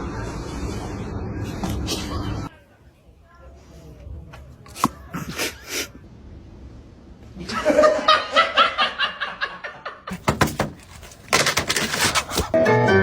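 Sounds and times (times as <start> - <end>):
human laughter: 5.0 - 6.0, 7.3 - 10.1
sharp knocks: 10.1 - 12.5.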